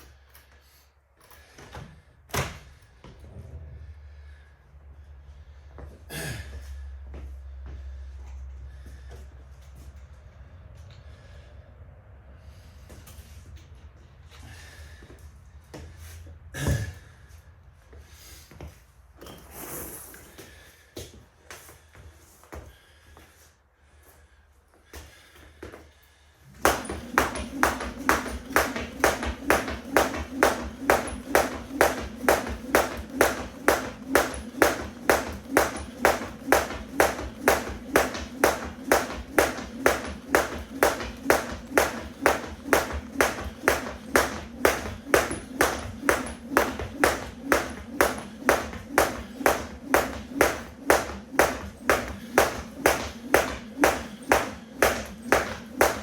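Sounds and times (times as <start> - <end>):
jump rope slapping the floor: 26.5 - 56.0.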